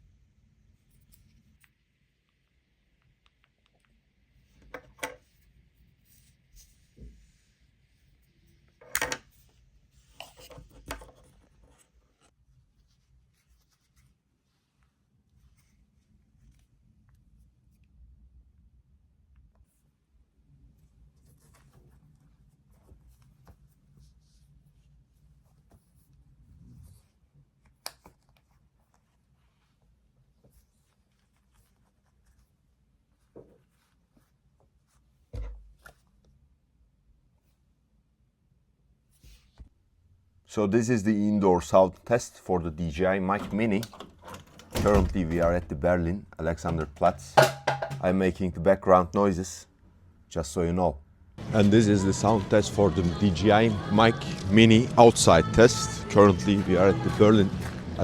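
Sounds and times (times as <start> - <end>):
heavy thump of object set down: 47.4 - 48.0
knock: 47.4 - 48.0.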